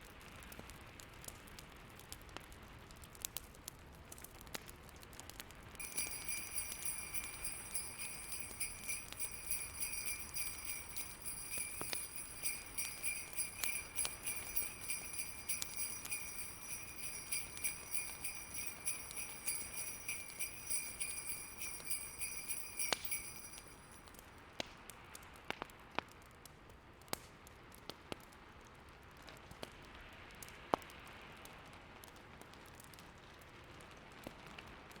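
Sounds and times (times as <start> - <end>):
wood fire crackling: 0.5 - 24.2
sleigh bells jingling: 5.8 - 24.1.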